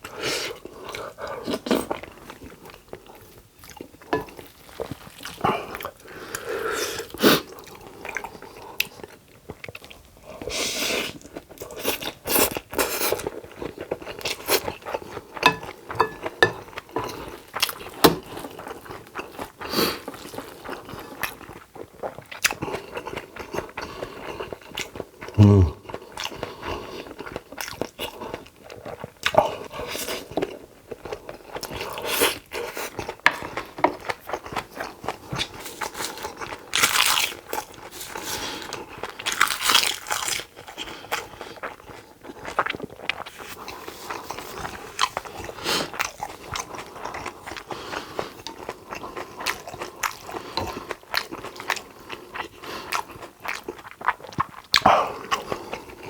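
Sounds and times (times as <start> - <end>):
person chewing food: 0.0 - 56.0.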